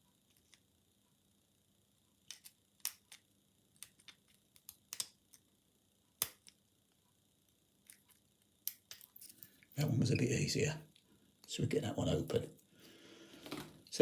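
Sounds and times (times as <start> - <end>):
lock picking metal clicks: 2.3 - 3.2, 3.8 - 5.4, 6.2 - 6.6, 7.9 - 9.5.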